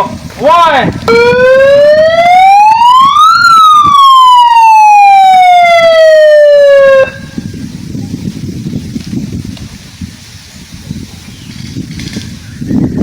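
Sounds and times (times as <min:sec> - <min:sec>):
siren wail: 0:01.1 - 0:07.4.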